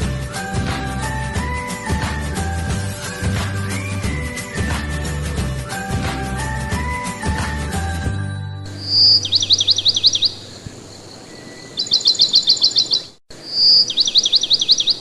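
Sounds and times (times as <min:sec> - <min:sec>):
songbird singing: 0:00.0 - 0:05.1, 0:08.7 - 0:15.0
music track: 0:00.0 - 0:08.8.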